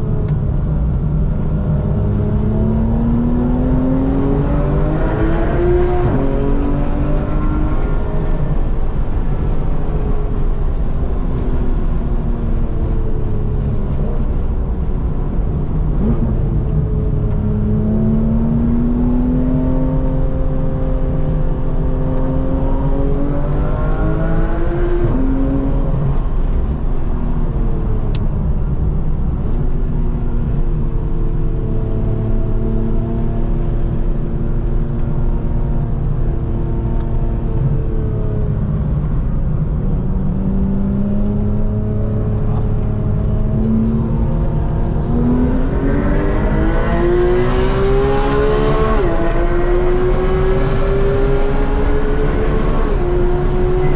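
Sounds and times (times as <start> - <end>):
sports car engine revving from cabin: 39.6 - 53.9.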